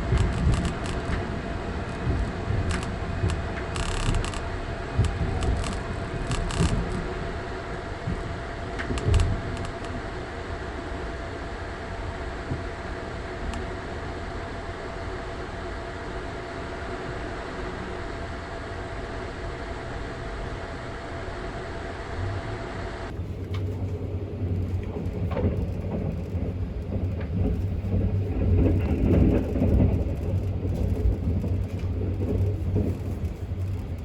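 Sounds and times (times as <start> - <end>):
clicks and knocks of train: 0.0 - 16.4, 23.1 - 34.0
train rumble with faint whine: 0.0 - 34.0.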